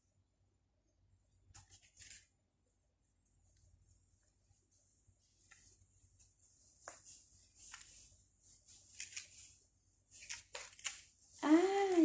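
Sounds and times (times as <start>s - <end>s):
cloth rustling: 3.4s - 12.0s.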